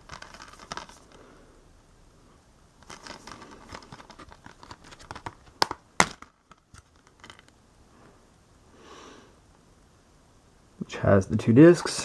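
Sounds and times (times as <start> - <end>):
packaging crinkling and scraping: 0.0 - 1.2, 2.8 - 7.5.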